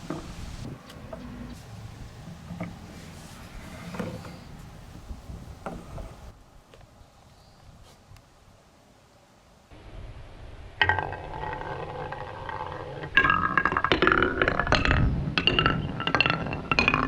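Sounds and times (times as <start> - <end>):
marbles clicking and clinking: 10.8 - 17.0
marbles rolling down track: 10.8 - 17.0.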